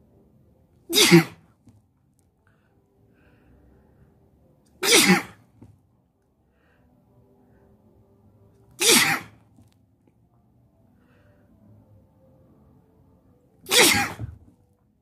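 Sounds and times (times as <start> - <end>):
man sneezing: 0.9 - 1.4, 4.8 - 5.4, 8.8 - 9.4, 13.7 - 14.4.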